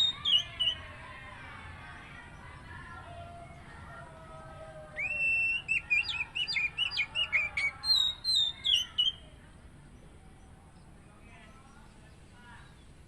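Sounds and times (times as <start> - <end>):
bird singing whistles and chirps: 0.0 - 0.8, 4.9 - 9.3.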